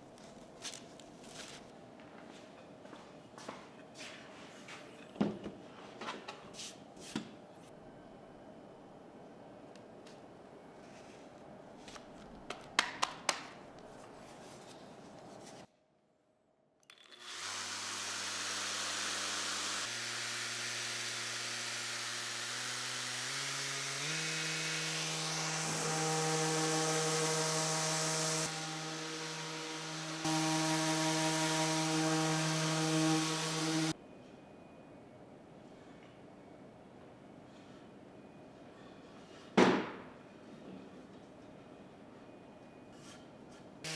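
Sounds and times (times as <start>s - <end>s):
electric power tool on wood: 16.9s - 34.0s.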